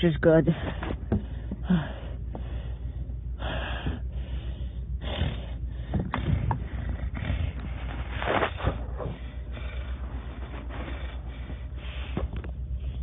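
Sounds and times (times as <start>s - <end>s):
low hum: 0.0s - 13.0s
person breathing heavily: 0.5s - 13.0s
breathy gasps: 0.6s - 7.6s.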